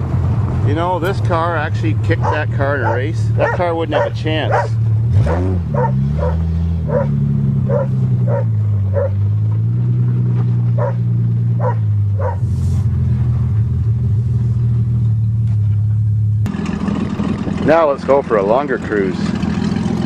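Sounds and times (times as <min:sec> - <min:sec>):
car engine running: 0:00.0 - 0:20.0
dog barking: 0:02.2 - 0:09.2, 0:10.8 - 0:11.0, 0:11.6 - 0:12.5.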